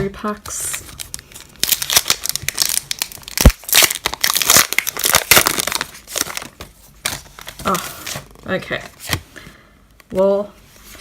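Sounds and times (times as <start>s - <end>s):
foil wrapper crinkling: 0.6s - 7.9s.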